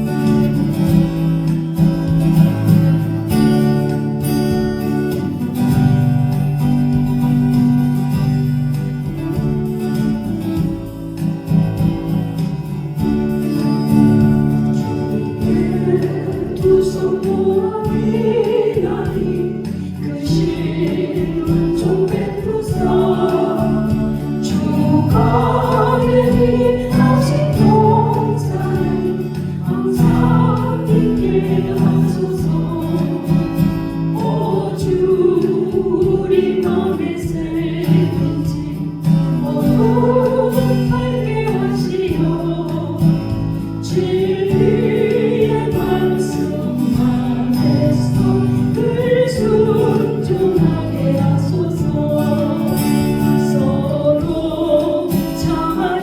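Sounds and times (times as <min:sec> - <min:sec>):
instrumental accompaniment chords: 0:00.0 - 0:56.0
person singing a hymn: 0:14.8 - 0:56.0.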